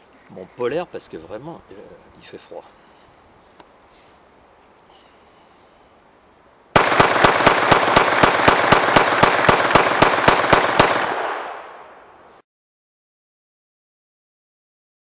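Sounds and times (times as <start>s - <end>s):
pistol rapid fire: 6.8s - 11.9s
gunshot echoes: 6.8s - 12.0s.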